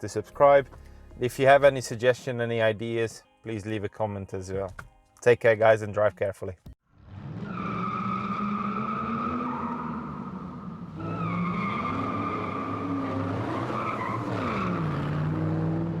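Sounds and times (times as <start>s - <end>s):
tyre squeal: 11.0s - 14.9s.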